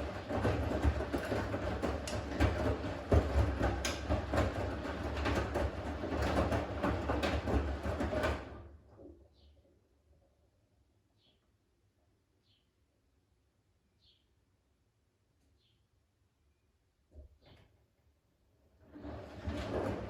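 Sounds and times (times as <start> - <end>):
washing machine drum turning: 0.0 - 8.6, 18.9 - 20.0.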